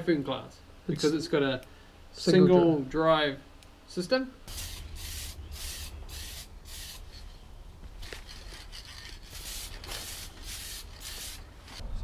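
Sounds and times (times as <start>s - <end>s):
sandpaper rubbing plastic: 8.0s - 11.8s.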